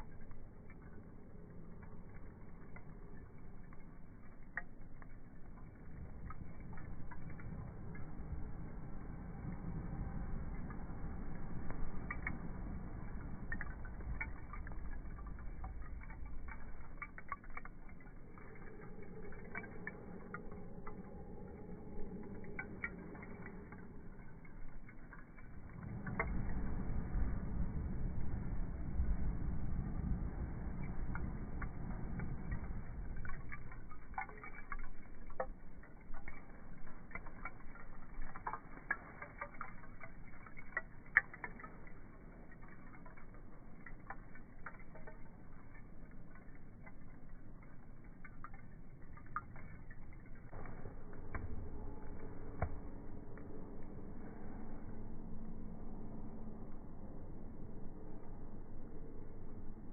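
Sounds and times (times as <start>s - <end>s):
wood fire crackling: 0.0s - 26.9s, 29.8s - 52.8s
low steady rumble: 0.0s - 59.9s.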